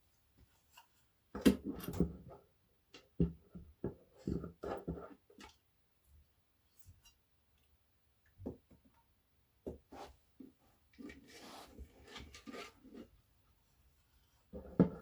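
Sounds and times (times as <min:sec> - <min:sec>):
rubbing and scraping: 0:11.0 - 0:13.1.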